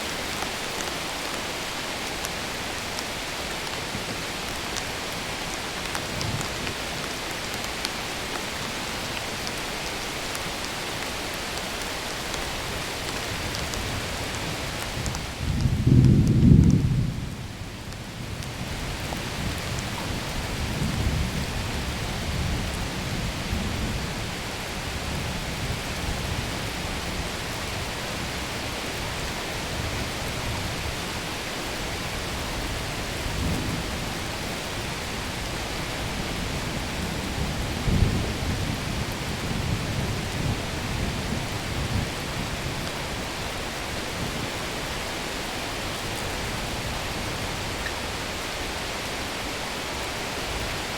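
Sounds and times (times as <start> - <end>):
steady rain hiss: 0.0 - 50.9
thunder rumbling: 13.4 - 17.6.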